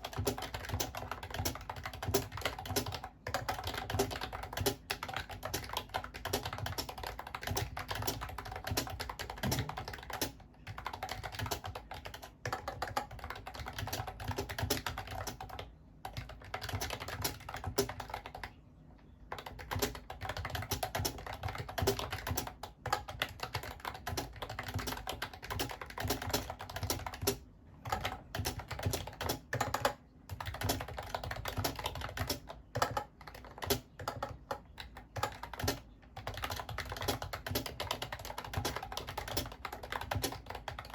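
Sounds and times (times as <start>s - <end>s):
keyboard key clicks: 0.1s - 15.4s.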